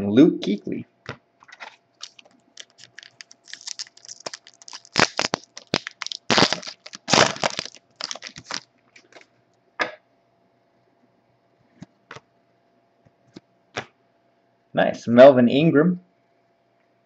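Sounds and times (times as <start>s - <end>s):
cards clicking and rustling: 1.4s - 9.2s
foil pack tearing and crinkling: 2.0s - 8.7s.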